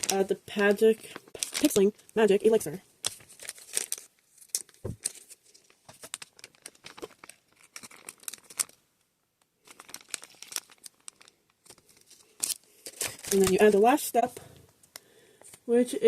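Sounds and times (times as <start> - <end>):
plastic packaging crinkling: 0.0 - 8.8, 9.6 - 14.2.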